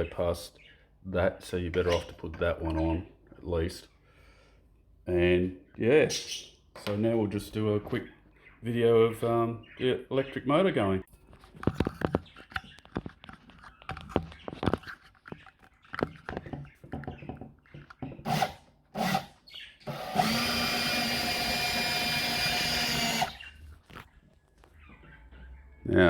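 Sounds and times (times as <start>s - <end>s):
knocks and clicks of handling: 11.3s - 18.3s
electric drill running: 18.2s - 23.5s.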